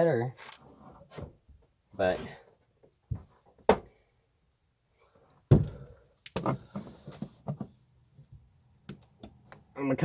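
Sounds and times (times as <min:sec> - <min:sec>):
loud thunk: 0:05.5 - 0:06.6.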